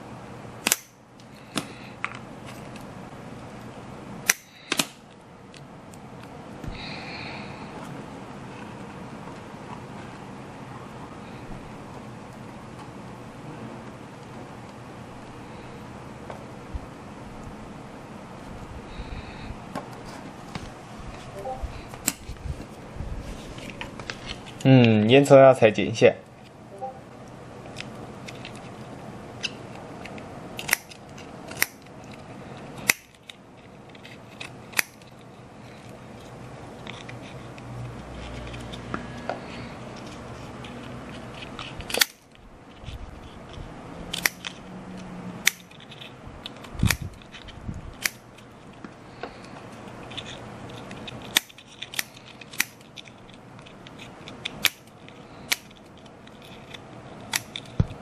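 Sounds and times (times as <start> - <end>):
scissors snipping: 0.6 - 1.0, 4.2 - 5.0, 30.6 - 31.8, 32.8 - 33.2, 34.4 - 35.0, 41.6 - 42.2, 44.1 - 44.6, 45.4 - 47.3, 48.0 - 48.2, 50.1 - 53.1, 53.8 - 55.8, 56.4 - 57.8.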